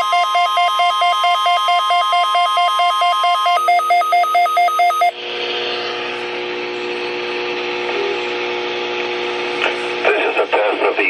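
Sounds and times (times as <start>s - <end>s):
weather alert radio beeping: 0.0s - 5.2s
radio hiss with low hum: 5.2s - 11.0s.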